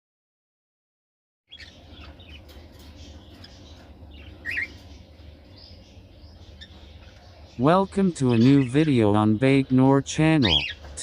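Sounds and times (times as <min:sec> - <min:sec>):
cockatiels chirping: 0:01.5 - 0:11.0
steady low hum: 0:01.5 - 0:11.0.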